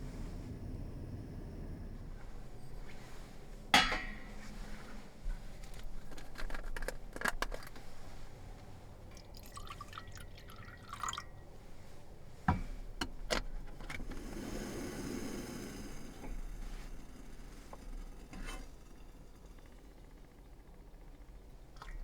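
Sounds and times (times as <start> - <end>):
drink pouring into glass: 9.1 - 11.4
glass and containers clicking: 9.2 - 11.4
hissing pour-like wash: 14.2 - 17.7.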